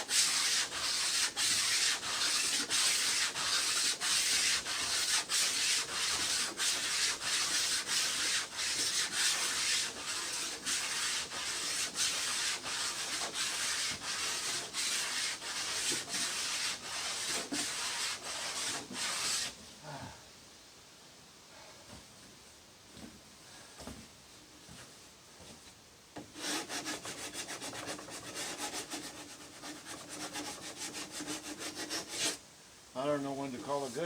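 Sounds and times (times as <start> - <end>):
hand sanding wood: 0.0 - 19.6, 26.3 - 32.4.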